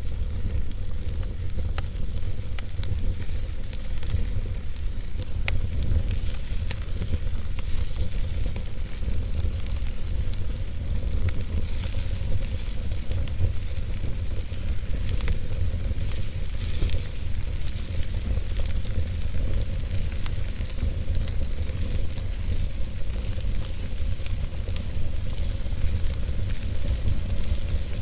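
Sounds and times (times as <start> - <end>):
wood fire crackling: 0.0 - 28.0.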